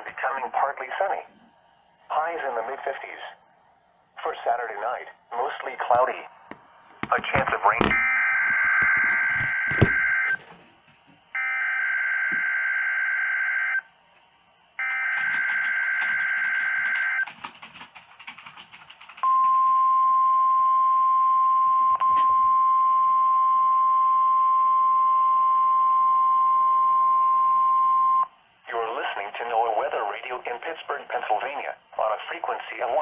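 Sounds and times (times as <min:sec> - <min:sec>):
steady warning alarm tone: 0:07.9 - 0:10.4, 0:11.4 - 0:13.9, 0:14.8 - 0:17.2.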